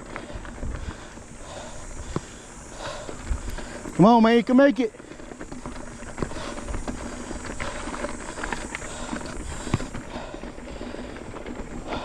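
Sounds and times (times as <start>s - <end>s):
tyres crunching over loose rock: 3.2s - 12.0s.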